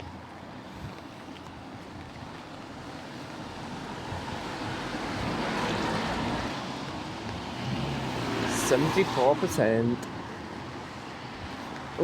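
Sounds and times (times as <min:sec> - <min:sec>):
heavy rain falling: 0:00.2 - 0:09.2.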